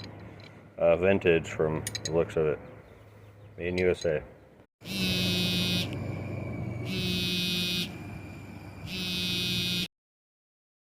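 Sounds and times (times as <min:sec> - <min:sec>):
electronic buzzer tone: 0:04.8 - 0:06.0, 0:06.8 - 0:08.0, 0:08.8 - 0:09.9.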